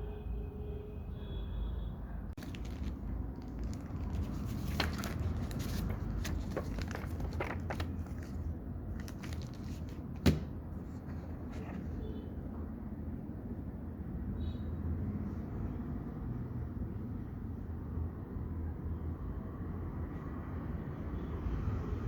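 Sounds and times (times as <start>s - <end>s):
packaging rustling: 2.4s - 12.0s.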